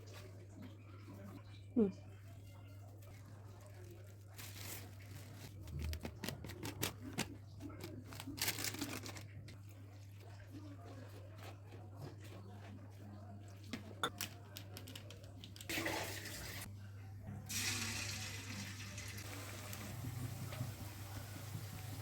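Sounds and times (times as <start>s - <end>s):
running water: 15.7s - 16.7s, 17.5s - 22.0s.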